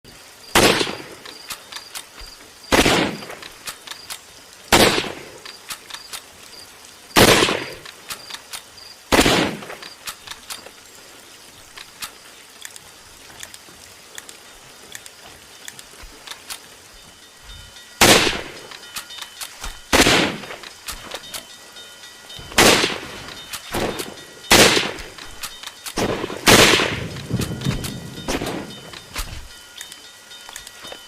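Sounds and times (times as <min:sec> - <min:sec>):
rifle shots with echo: 0:00.6 - 0:01.1, 0:02.7 - 0:03.3, 0:04.7 - 0:05.2, 0:07.2 - 0:07.8, 0:09.1 - 0:09.8, 0:18.0 - 0:18.5, 0:19.9 - 0:20.6, 0:22.5 - 0:23.0, 0:23.7 - 0:25.1, 0:26.0 - 0:28.8
small clicks: 0:00.9 - 0:02.5, 0:03.2 - 0:04.3, 0:05.4 - 0:06.5, 0:07.7 - 0:08.8, 0:09.7 - 0:10.8, 0:11.7 - 0:16.8, 0:18.5 - 0:21.5, 0:23.2 - 0:24.2, 0:25.0 - 0:26.0, 0:27.0 - 0:31.0.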